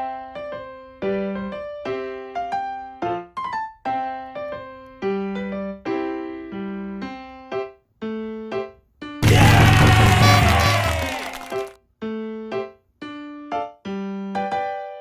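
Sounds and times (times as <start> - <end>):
loud noisy sound: 9.2 - 11.7.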